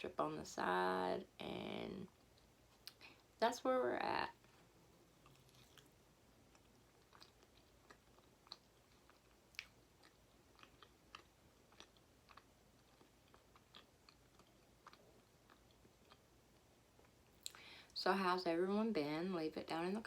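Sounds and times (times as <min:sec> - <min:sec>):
chewing food: 0:04.4 - 0:17.7.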